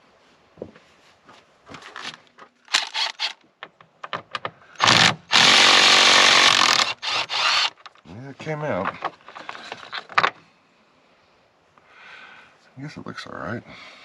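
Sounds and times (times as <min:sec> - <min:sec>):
knocks and clicks of handling parts: 0:01.7 - 0:04.7, 0:07.8 - 0:10.4
handheld power tool running: 0:02.7 - 0:03.3, 0:04.8 - 0:07.8.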